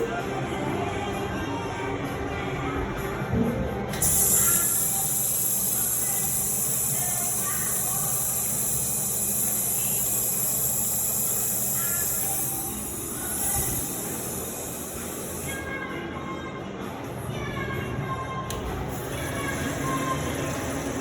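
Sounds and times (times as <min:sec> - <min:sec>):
toilet flushing: 0:03.9 - 0:15.7, 0:18.5 - 0:21.0.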